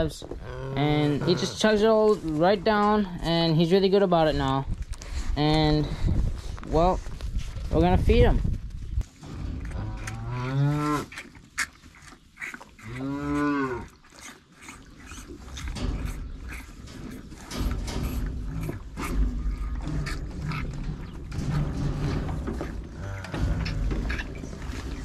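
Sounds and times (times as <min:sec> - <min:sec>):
cattle mooing: 0:00.4 - 0:01.7, 0:12.8 - 0:13.9, 0:22.9 - 0:23.8.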